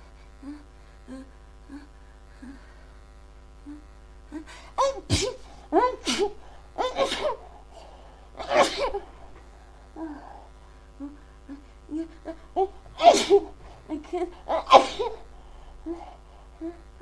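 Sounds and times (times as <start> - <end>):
faint breathy sounds: 0.0 - 6.8, 7.4 - 8.4, 9.0 - 17.0
woman sneezing: 4.8 - 7.5, 8.4 - 9.1, 13.0 - 13.6, 14.4 - 15.2.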